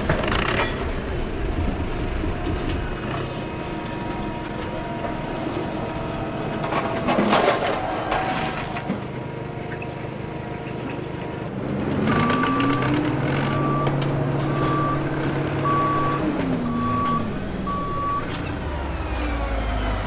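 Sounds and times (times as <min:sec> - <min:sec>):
vehicle engine running: 0:09.0 - 0:20.0
reversing alarm beeping: 0:12.2 - 0:18.5.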